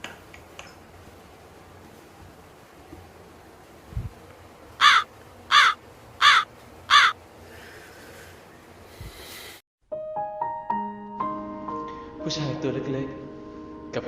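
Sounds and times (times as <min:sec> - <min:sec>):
crow cawing: 0:04.8 - 0:07.2.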